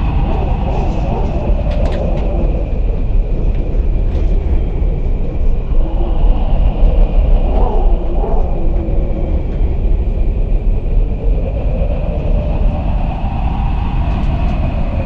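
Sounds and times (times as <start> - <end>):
loud low rumble: 0.0 - 15.0.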